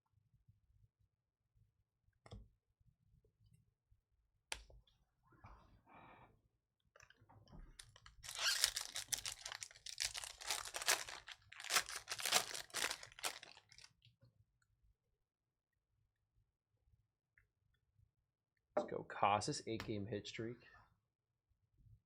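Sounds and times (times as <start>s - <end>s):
plastic wrapper crinkling: 7.8s - 13.9s.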